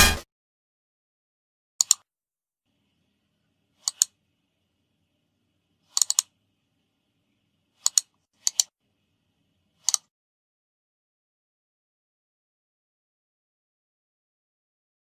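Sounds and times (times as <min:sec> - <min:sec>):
short sharp clicks: 0:01.8 - 0:02.0.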